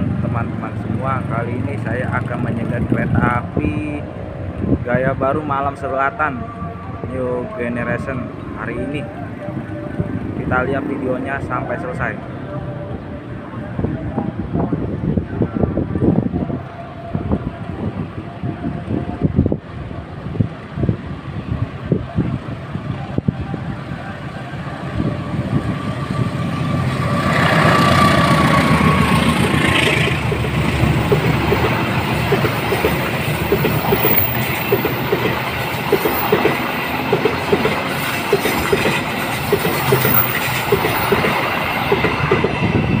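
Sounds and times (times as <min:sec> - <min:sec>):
diesel locomotive rumble: 0:00.0 - 0:43.0
train wheels clacking over rail joints: 0:27.8 - 0:42.8.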